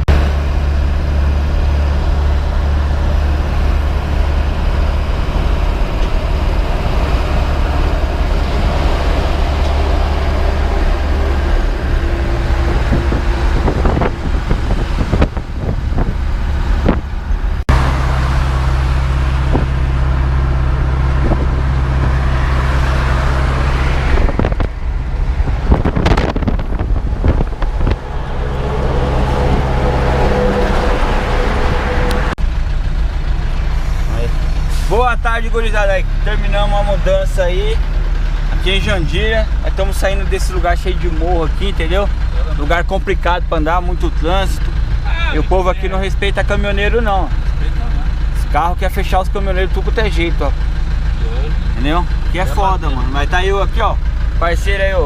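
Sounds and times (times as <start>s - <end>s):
road noise: 0.0s - 55.0s
truck engine drone: 0.0s - 55.0s.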